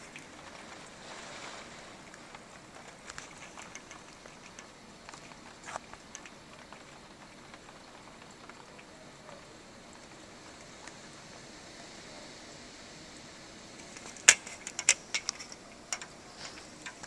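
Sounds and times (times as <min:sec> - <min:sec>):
steady rain hiss: 0:00.0 - 0:17.0
drops ticking on a surface: 0:02.1 - 0:11.0.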